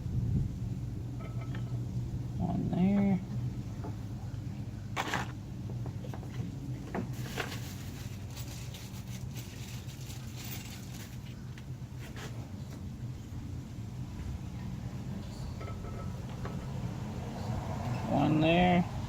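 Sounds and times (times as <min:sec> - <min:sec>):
steady low hum: 0:00.0 - 0:19.0
tools being handled: 0:07.1 - 0:11.4.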